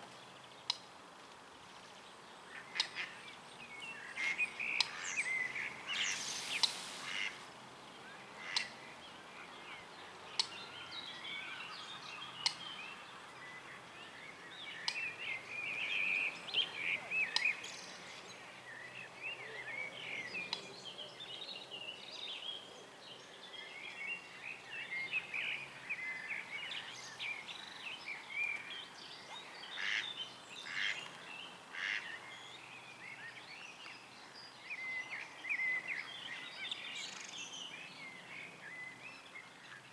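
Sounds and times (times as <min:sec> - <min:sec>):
birds chirping and twittering: 0:02.5 - 0:07.5.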